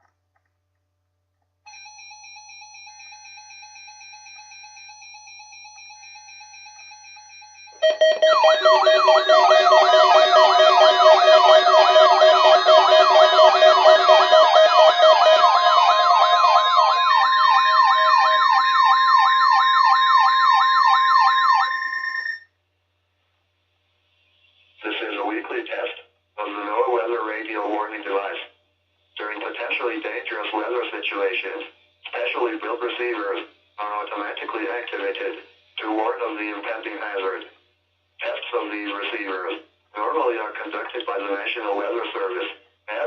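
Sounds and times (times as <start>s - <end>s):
steady alarm tones: 2.4s - 22.4s
faint electronic keyboard tones: 7.8s - 18.6s
electronic siren wails: 7.8s - 22.4s.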